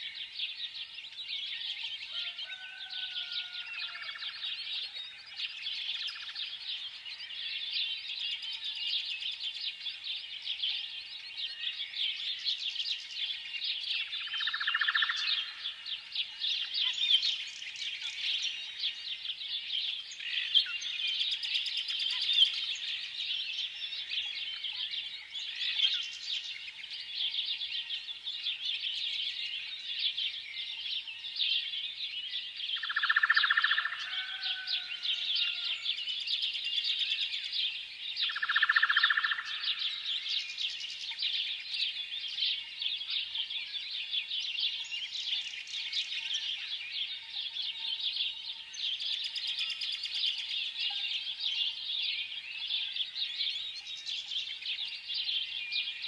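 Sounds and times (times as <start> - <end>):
small birds chirping: 0.0 - 56.0.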